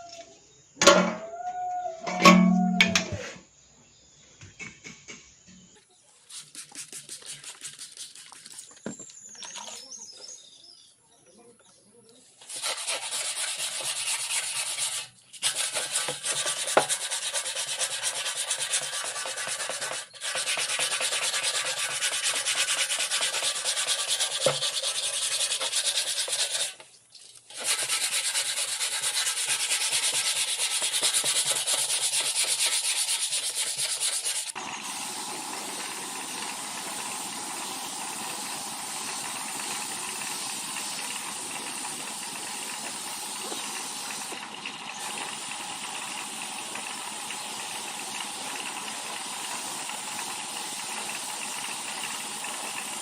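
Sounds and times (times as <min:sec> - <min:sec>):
sanding on metal tank: 0:06.2 - 0:08.8, 0:12.4 - 0:26.8, 0:27.5 - 0:53.0.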